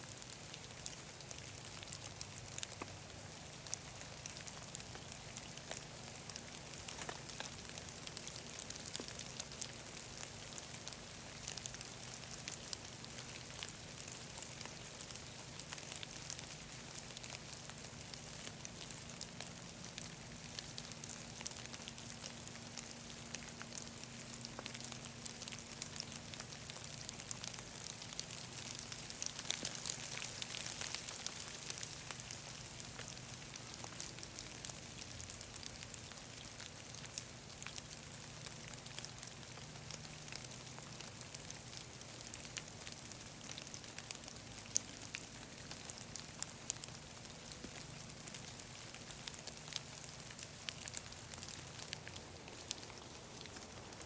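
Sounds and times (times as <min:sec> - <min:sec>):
rain patter in woodland: 0:00.0 - 0:54.0.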